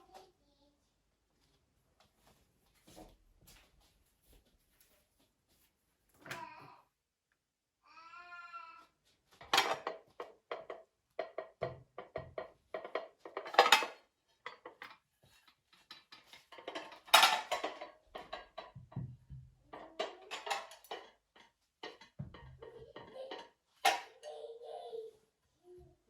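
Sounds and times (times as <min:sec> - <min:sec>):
dishes and cutlery clinking: 0:09.4 - 0:24.4.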